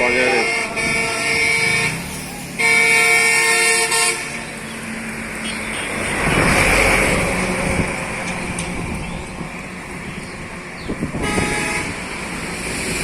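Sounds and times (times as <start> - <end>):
vehicle horn blaring: 0.0 - 4.5, 5.4 - 6.0, 11.1 - 12.0
motor vehicle passing: 0.0 - 13.0.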